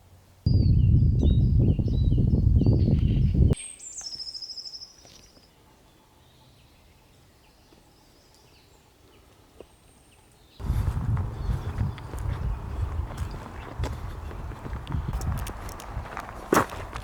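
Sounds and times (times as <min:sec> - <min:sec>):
faint bird chirps: 0:00.5 - 0:10.6
songbird high trill: 0:10.6 - 0:15.4
loud low rumble: 0:10.6 - 0:17.0.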